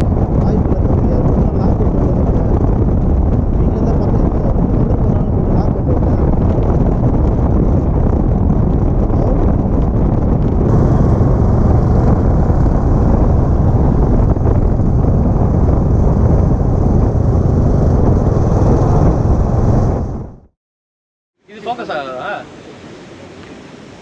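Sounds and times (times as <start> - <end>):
vehicle road and wind noise: 0.0 - 20.5.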